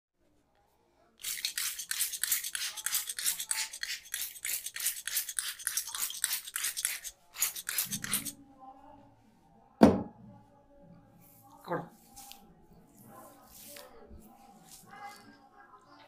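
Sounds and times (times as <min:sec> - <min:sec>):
hands scrubbing hair and scalp: 0:01.2 - 0:08.3, 0:12.0 - 0:12.4, 0:13.0 - 0:14.9.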